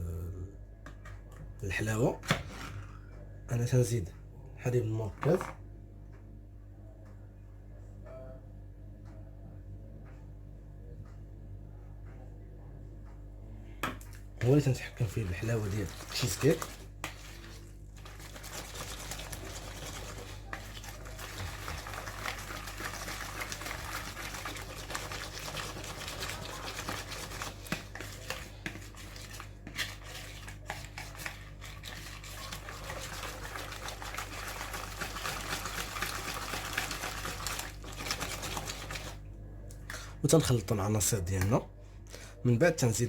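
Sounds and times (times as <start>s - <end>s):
utensil scraping a bowl: 15.2s - 22.6s, 24.9s - 35.4s.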